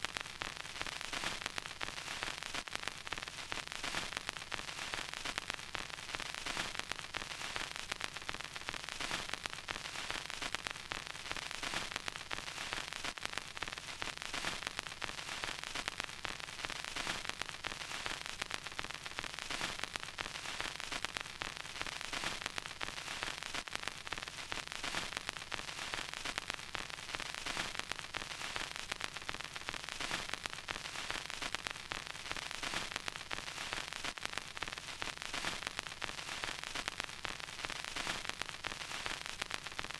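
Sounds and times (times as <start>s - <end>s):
vinyl record surface hiss: 0.0s - 39.9s.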